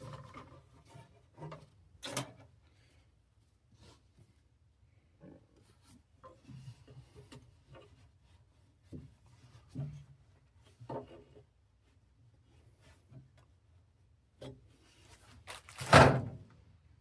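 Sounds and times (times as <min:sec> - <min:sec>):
faint handling knocks and clicks: 0:05.2 - 0:15.3.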